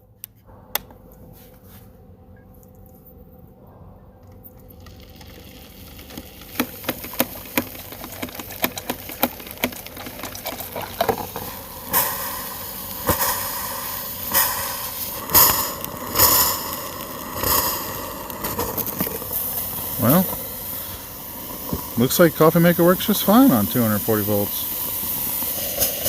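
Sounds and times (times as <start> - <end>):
heating element ticking: 4.2 - 26.0
water gurgling: 4.7 - 25.3
steam hissing: 5.0 - 26.0.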